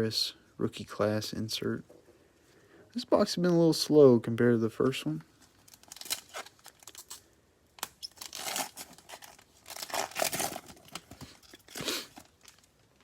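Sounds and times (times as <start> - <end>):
wrapper tearing and crinkling: 5.5 - 13.0.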